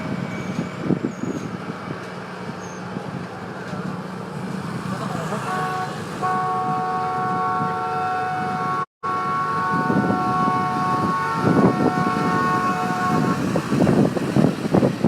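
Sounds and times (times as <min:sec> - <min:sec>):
street and traffic noise: 0:00.0 - 0:15.0
vehicle air horn chord: 0:05.4 - 0:13.5.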